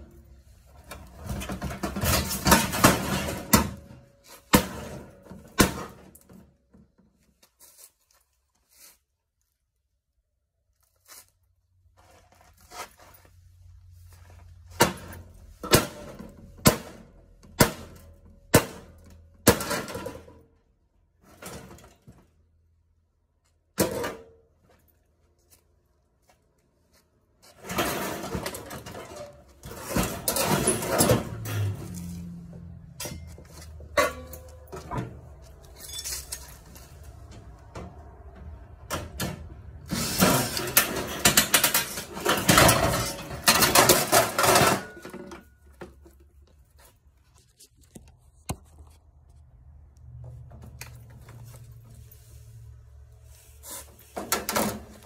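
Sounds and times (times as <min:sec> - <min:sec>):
parts scraping and rattling: 0:00.0 - 0:09.1, 0:26.9 - 0:55.0.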